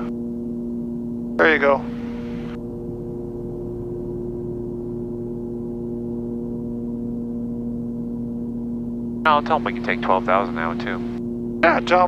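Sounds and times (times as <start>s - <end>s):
propeller engines droning: 0.0s - 12.0s.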